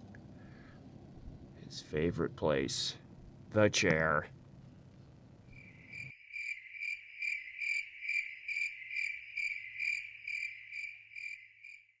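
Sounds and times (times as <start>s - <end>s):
cricket trilling: 5.5s - 12.0s.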